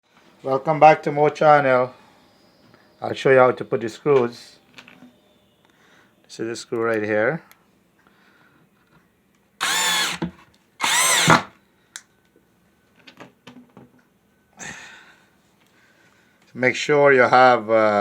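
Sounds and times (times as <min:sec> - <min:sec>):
power drill driving screw into wood: 0:09.6 - 0:11.5.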